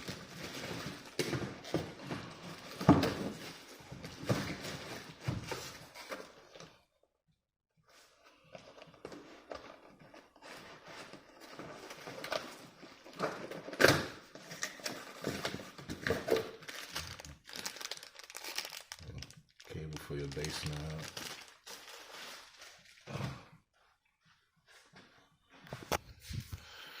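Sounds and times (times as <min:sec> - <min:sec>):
plastic packaging crinkling: 0:14.5 - 0:23.0.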